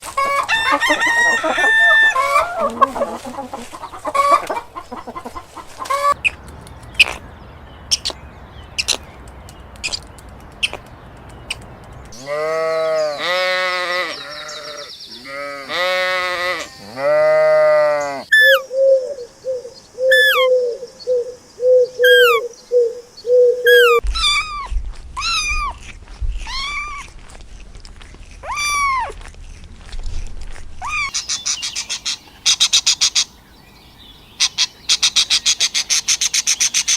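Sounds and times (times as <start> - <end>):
hens clucking: 0.0 - 7.2
birds chirping: 0.1 - 17.2, 17.8 - 27.1, 30.8 - 36.9
long wavering bleats: 12.2 - 18.3
low animal call: 12.2 - 27.2, 28.4 - 29.2.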